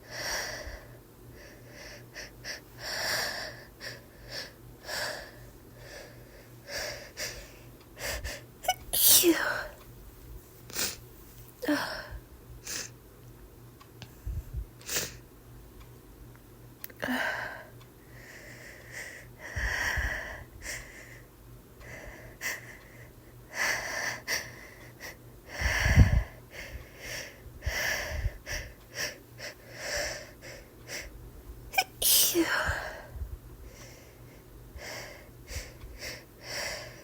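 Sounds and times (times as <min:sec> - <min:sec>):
woman sneezing: 0:08.7 - 0:09.7, 0:31.8 - 0:32.7.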